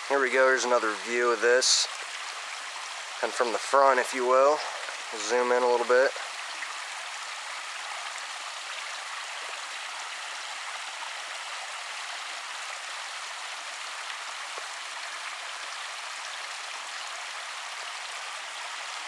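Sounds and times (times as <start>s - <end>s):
creek water running: 0.0s - 19.0s.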